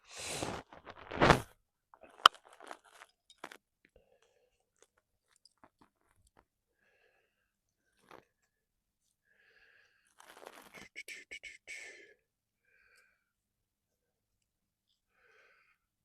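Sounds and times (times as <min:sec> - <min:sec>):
scraping rustles of gear: 0:00.4 - 0:01.5.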